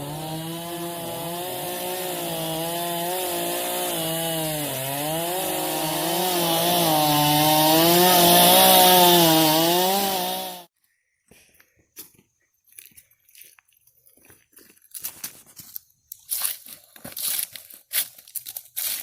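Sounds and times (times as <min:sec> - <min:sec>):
chainsaw cutting wood: 0:00.0 - 0:10.7.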